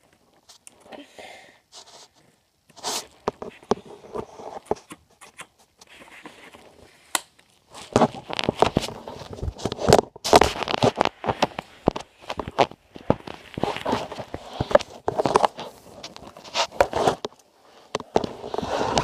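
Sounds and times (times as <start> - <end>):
packaging crinkling and tearing: 7.7 - 17.3.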